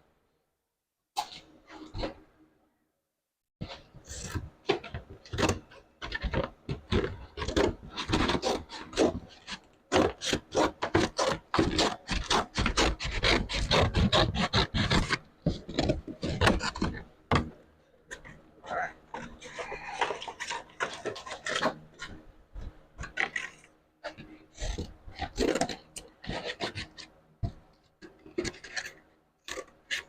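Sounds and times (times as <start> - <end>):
hand tool rasping on sheet metal: 6.2 - 17.0.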